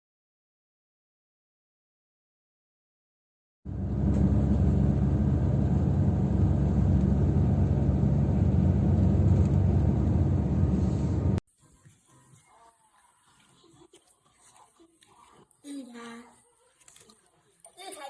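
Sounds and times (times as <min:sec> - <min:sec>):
low mechanical rumble with hum: 0:03.7 - 0:11.4.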